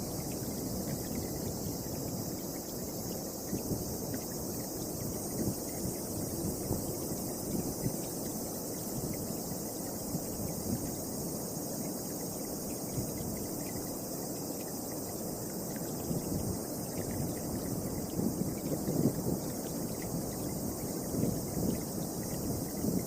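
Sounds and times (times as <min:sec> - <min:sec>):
wind gusts buffeting: 0:00.0 - 0:09.2, 0:16.0 - 0:23.0
high-pitched hiss: 0:00.0 - 0:23.0.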